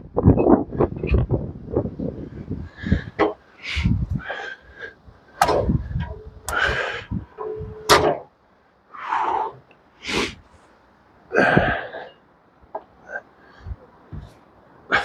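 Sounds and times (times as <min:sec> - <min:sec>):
heavy timber knocking and scraping: 0:14.1 - 0:14.4.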